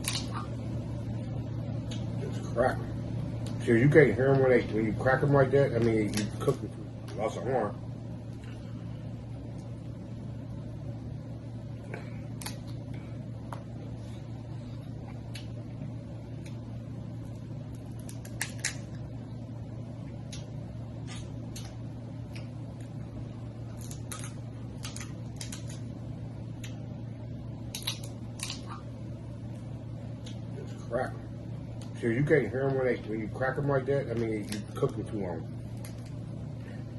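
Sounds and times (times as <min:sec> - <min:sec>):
crab shell cracking: 0:00.0 - 0:00.4, 0:12.3 - 0:12.9, 0:17.3 - 0:19.1, 0:23.7 - 0:25.9, 0:27.6 - 0:28.8, 0:35.7 - 0:36.2
steady low hum: 0:00.0 - 0:36.9.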